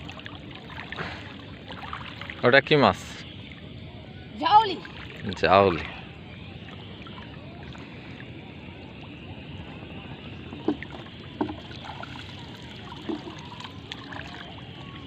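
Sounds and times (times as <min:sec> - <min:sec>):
water sloshing and lapping: 0:00.0 - 0:15.0
sharp water splashes: 0:10.6 - 0:14.8.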